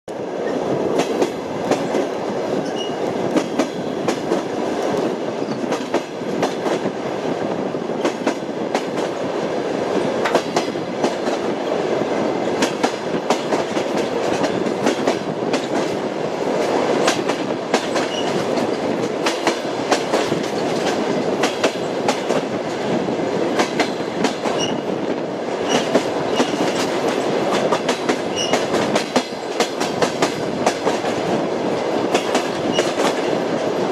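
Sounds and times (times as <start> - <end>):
railway wheels rumbling: 0.1 - 33.9
wheels clacking over rail joints: 25.6 - 33.6.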